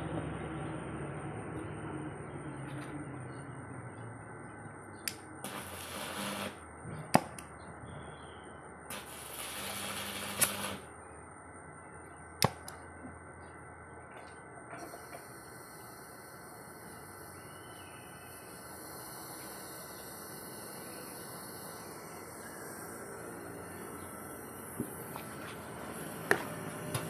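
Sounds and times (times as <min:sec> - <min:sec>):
sharp metallic clicks: 0:05.0 - 0:05.3
gas welding torch hissing: 0:05.1 - 0:06.6, 0:08.9 - 0:10.9, 0:14.8 - 0:27.0.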